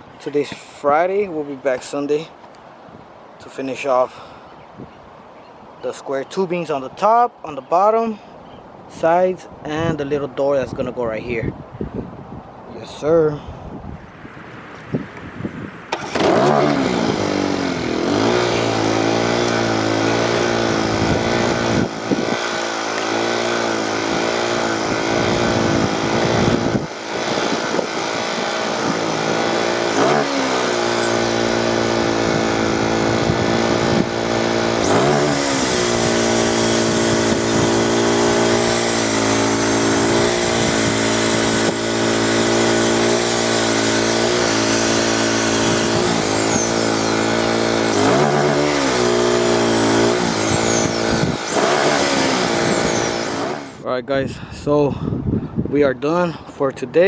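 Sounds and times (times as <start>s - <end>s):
angle grinder grinding metal: 15.9s - 53.8s.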